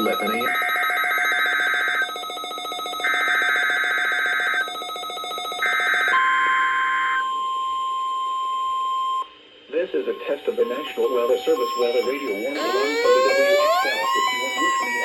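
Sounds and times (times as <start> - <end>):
warbling digital header tones: 0.0 - 0.6, 10.1 - 15.0
steady warning alarm tone: 0.0 - 9.2, 10.0 - 15.0.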